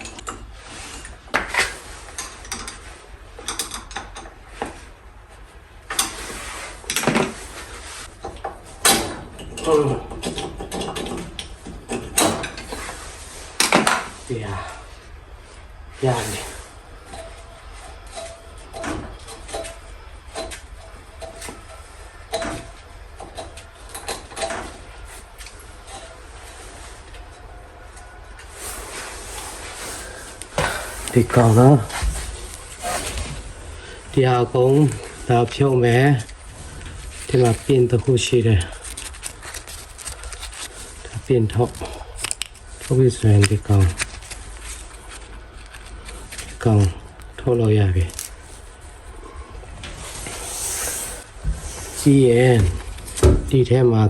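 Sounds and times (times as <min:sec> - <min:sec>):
tools and metal parts clicking: 0:00.0 - 0:04.4, 0:08.8 - 0:12.7.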